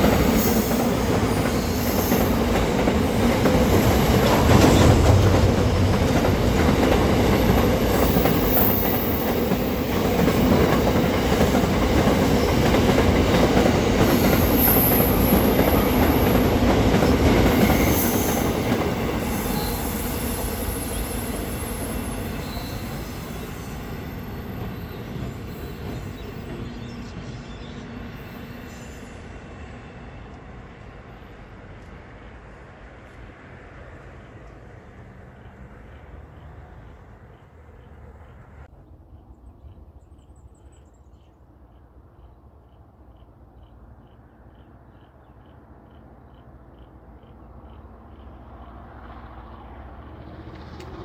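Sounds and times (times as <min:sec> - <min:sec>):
high wheel squeal: 0:00.0 - 0:30.5
train passing with clickety-clack: 0:00.0 - 0:39.3, 0:41.5 - 0:51.0.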